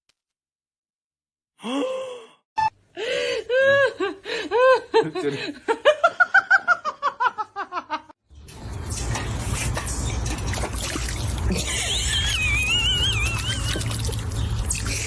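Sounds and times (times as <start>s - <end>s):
person laughing hard: 3.5s - 8.1s, 11.5s - 14.0s.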